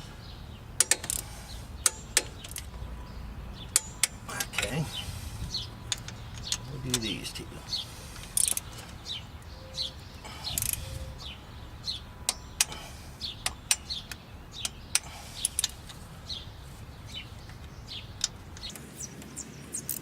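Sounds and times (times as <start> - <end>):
birds chirping: 0.0 - 20.0
wrench clicking on bolts: 0.8 - 2.7, 3.7 - 4.7, 5.9 - 7.1, 8.2 - 8.8, 10.6 - 10.8, 13.4 - 16.0.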